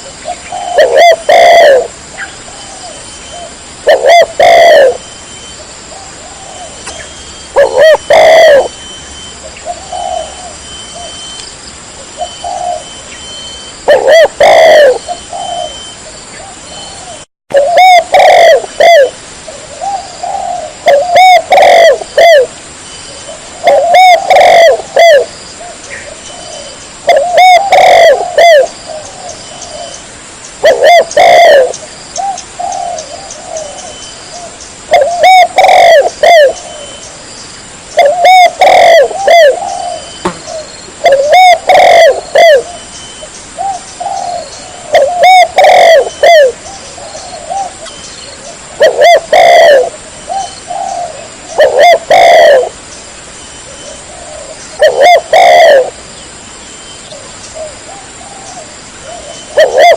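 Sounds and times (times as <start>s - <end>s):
dove cooing: 0.0s - 5.0s, 5.6s - 8.8s, 9.4s - 11.3s, 12.0s - 30.0s, 30.6s - 37.2s, 37.9s - 42.9s, 43.6s - 52.8s, 53.7s - 56.0s, 57.1s - 59.9s.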